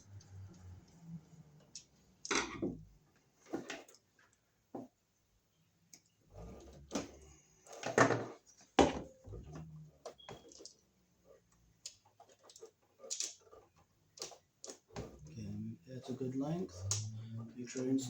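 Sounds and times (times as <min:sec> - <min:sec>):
wire snapping: 0:16.8 - 0:17.2.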